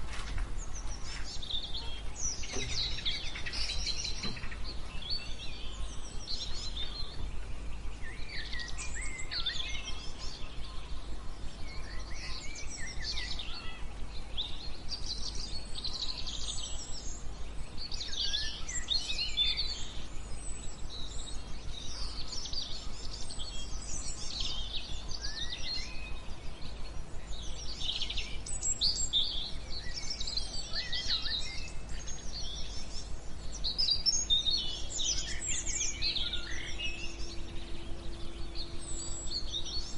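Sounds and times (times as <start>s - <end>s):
songbirds chirping: 0.0s - 39.9s
white noise: 0.0s - 39.9s
low rumble: 35.4s - 39.9s.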